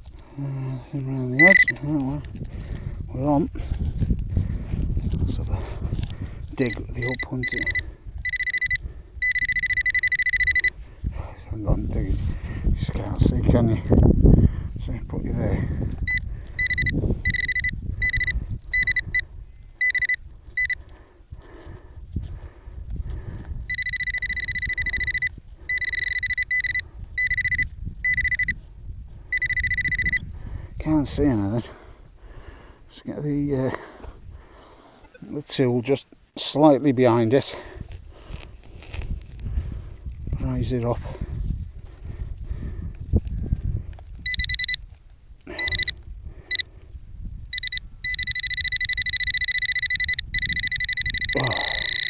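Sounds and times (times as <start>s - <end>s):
soil rustling: 0.0s - 13.4s, 33.6s - 46.7s
metal detector pulsing tone: 1.2s - 2.1s, 6.6s - 10.8s, 16.0s - 20.8s, 23.7s - 28.6s, 29.3s - 30.3s, 44.2s - 44.8s, 45.5s - 46.7s, 47.5s - 52.0s.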